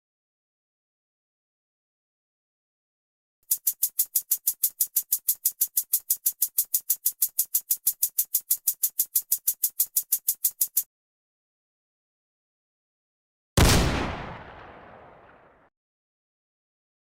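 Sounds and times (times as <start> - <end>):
rapid high-pitched clicks: 3.4 - 10.9.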